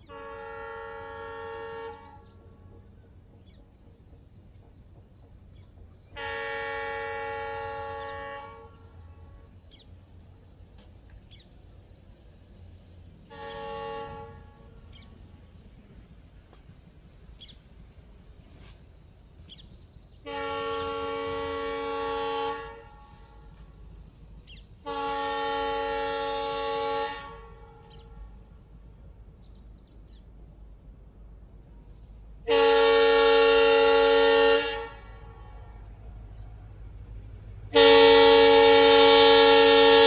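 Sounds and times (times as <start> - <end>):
locomotive air horn blasts: 0.0 - 2.7, 6.2 - 9.6, 13.2 - 15.1, 20.2 - 23.8, 24.8 - 28.4, 32.4 - 36.1, 37.7 - 40.0.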